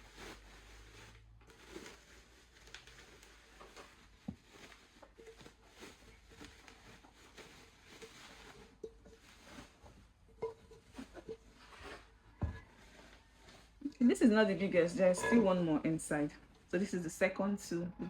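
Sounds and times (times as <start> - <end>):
packaging rustling: 0.0 - 10.0
metal cookware knocking: 10.4 - 11.4.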